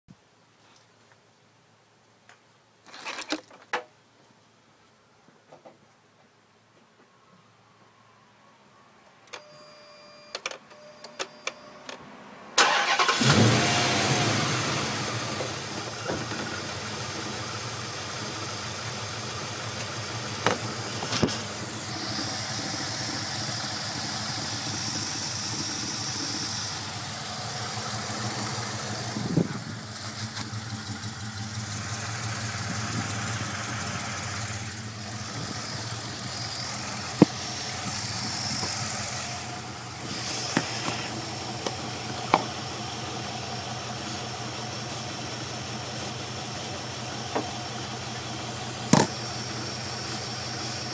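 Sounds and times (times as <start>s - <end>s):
engine idling rough: 12.6s - 50.9s.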